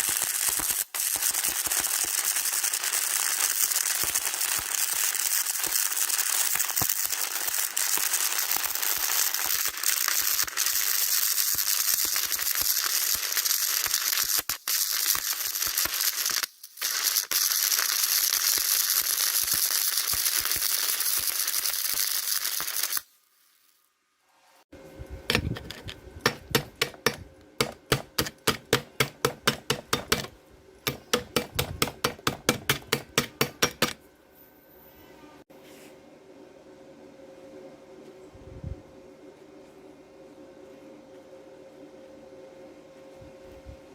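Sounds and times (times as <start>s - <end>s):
arc welding crackling hiss: 0.0s - 23.8s, 25.3s - 30.3s, 30.9s - 34.0s.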